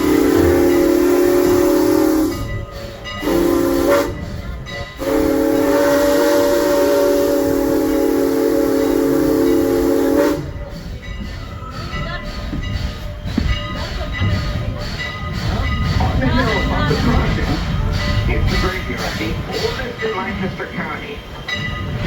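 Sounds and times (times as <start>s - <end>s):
steam locomotive chime whistle: 0.0s - 15.9s
train running noise: 0.0s - 22.0s.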